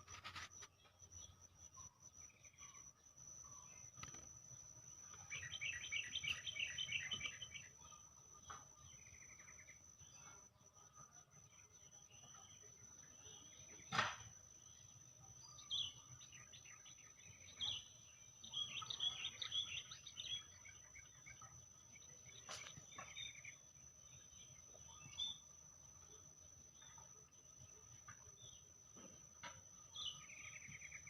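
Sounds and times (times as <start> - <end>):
faint high-pitched whine: 0.0 - 31.0
songbirds chirping: 0.0 - 31.0.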